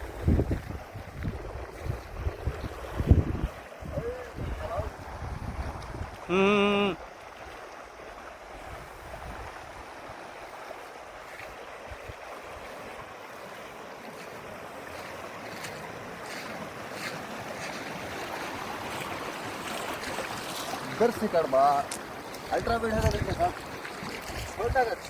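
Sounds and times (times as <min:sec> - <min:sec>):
river water rushing: 0:00.0 - 0:25.0.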